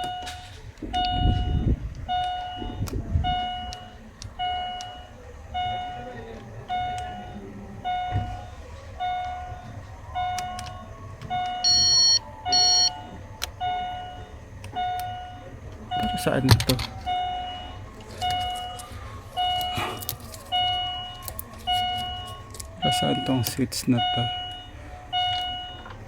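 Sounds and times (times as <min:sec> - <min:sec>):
car alarm beeping: 0:00.0 - 0:26.0
sharp high beeps: 0:11.4 - 0:13.0, 0:20.6 - 0:25.9.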